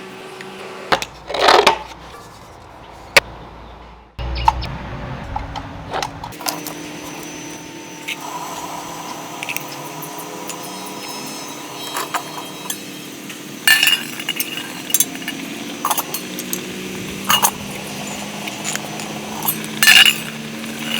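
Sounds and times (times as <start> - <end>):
steady low hum: 4.2 - 8.0.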